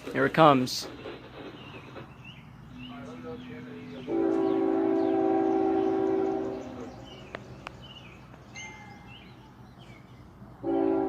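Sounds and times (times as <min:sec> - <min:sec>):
birds chirping: 0:00.0 - 0:11.0
locomotive air horn blast: 0:03.9 - 0:07.2, 0:10.6 - 0:11.0.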